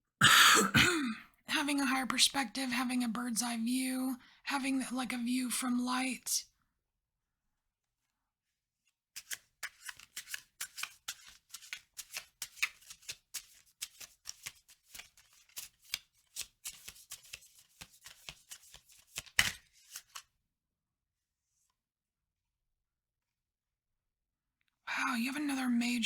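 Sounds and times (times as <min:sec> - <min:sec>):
cards being shuffled: 0:09.2 - 0:20.2.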